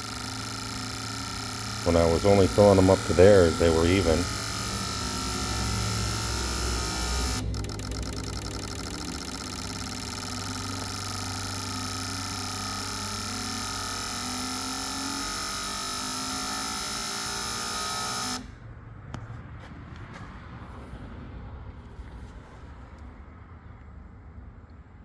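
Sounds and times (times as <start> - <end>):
fuel injectors buzzing: 0.0 - 18.6.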